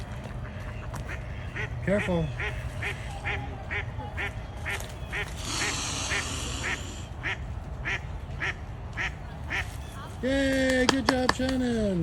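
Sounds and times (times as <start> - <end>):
ducks quacking: 0.2 - 9.7.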